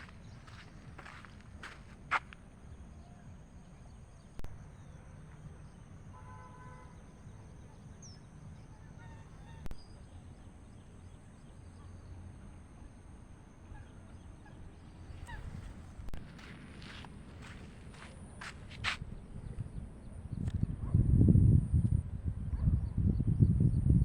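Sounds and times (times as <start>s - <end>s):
steady low rumble: 0.0s - 3.0s, 14.6s - 24.0s.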